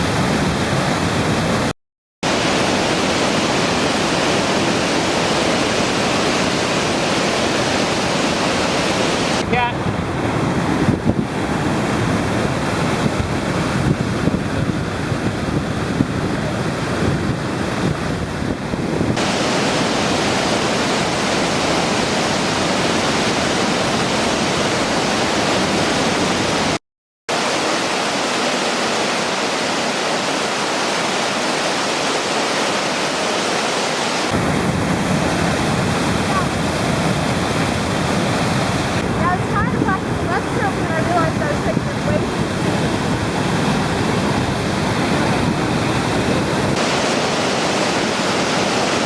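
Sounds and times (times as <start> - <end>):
waterfall rushing: 0.0 - 49.0
wind buffeting microphone: 9.2 - 19.3, 34.3 - 46.9.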